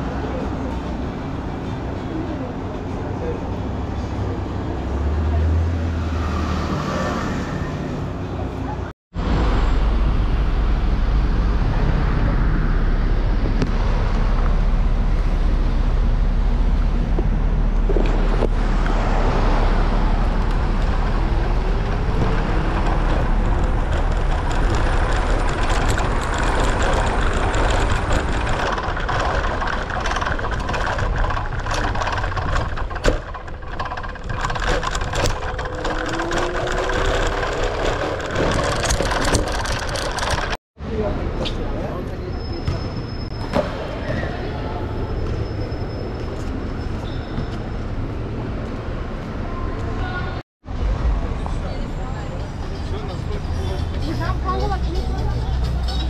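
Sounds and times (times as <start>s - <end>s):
heavy low traffic rumble: 0.0s - 56.0s
vehicles passing: 0.0s - 56.0s
engines changing speed: 3.5s - 40.6s.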